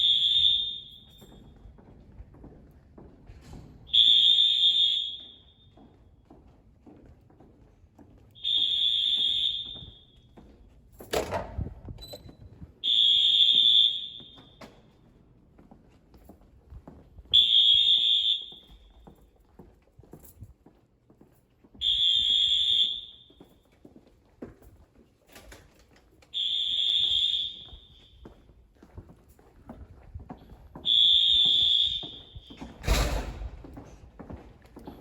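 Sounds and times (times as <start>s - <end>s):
fire alarm horn blasts: 0.0s - 1.4s, 3.9s - 5.7s, 8.4s - 10.4s, 12.8s - 14.9s, 17.3s - 19.1s, 21.8s - 23.6s, 26.3s - 28.4s, 30.8s - 32.7s.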